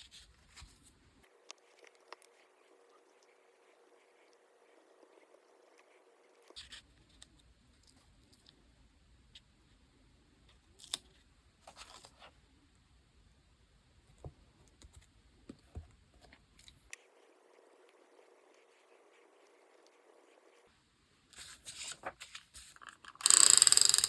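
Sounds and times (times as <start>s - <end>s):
sharp click: 23.2s - 24.0s.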